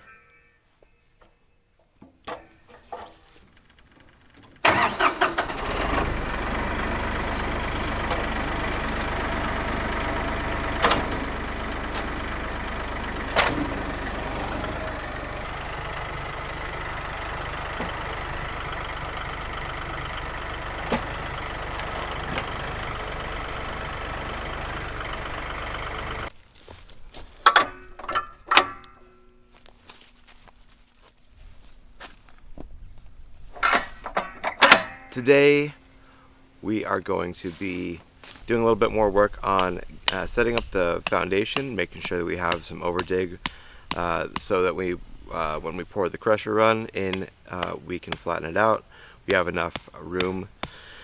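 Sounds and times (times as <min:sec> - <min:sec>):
tractor diesel engine running: 0:02.2 - 0:51.0
clicks and knocks: 0:27.4 - 0:29.2.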